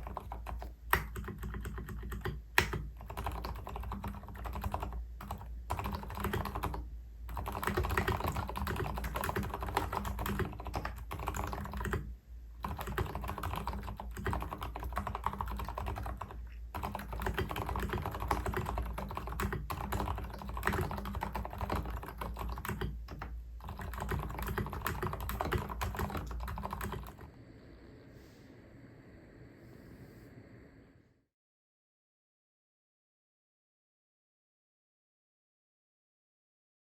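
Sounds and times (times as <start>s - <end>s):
fast typing on mechanical keyboard: 0.0s - 27.3s.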